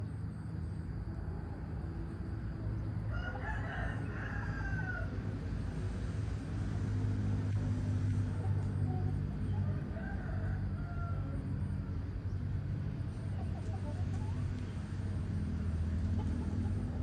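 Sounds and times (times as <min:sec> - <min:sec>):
steady low hum: 0:00.0 - 0:17.0
rooster crowing: 0:03.1 - 0:05.2, 0:09.6 - 0:11.9.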